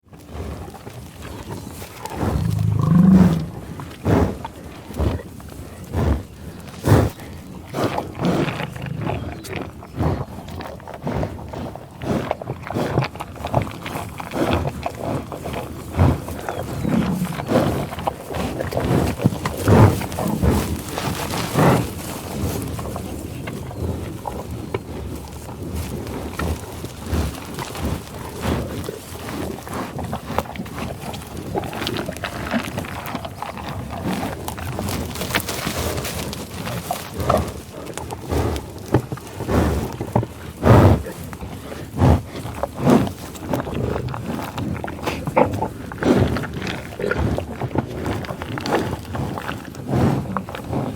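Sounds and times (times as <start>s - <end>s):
low cattle sounds: 0.0s - 50.9s
cow mooing: 2.2s - 3.6s, 16.6s - 17.7s.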